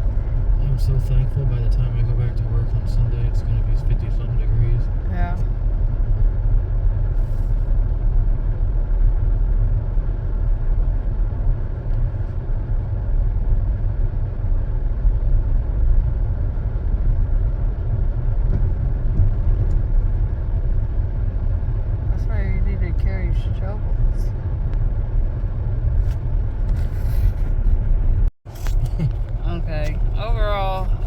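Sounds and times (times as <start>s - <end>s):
car driving on snowy road: 0.0s - 31.0s.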